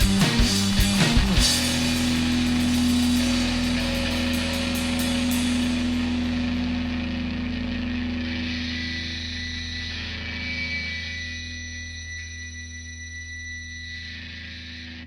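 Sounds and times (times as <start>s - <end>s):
rock band playing: 0.0s - 10.9s.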